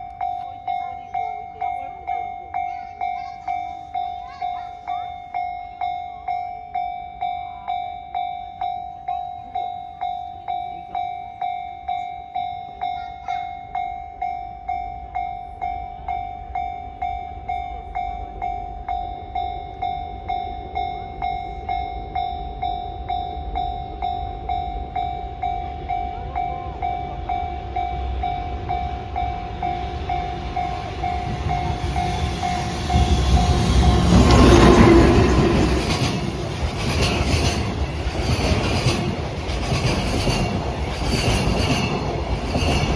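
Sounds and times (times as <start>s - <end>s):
freight train passing: 0.0s - 42.9s
level crossing warning bell: 0.0s - 42.9s.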